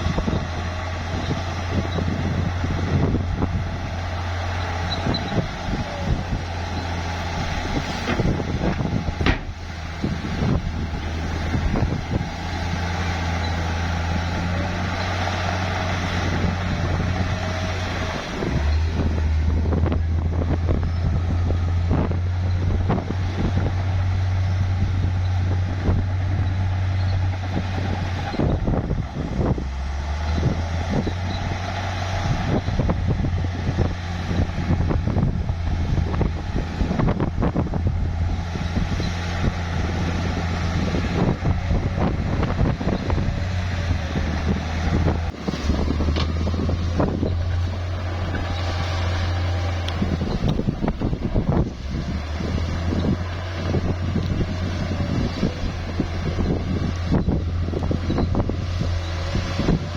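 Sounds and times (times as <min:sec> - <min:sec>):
bulldozer diesel engine: 0:00.0 - 0:59.9
tracks clanking and knocking: 0:04.0 - 0:19.2, 0:44.1 - 0:51.8.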